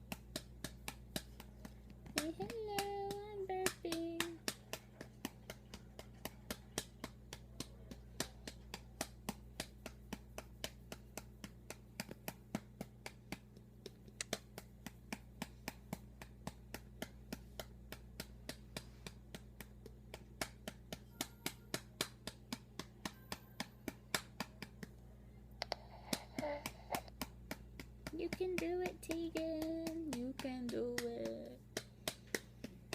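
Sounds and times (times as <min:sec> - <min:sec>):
hand patting doll: 0:00.0 - 0:32.9.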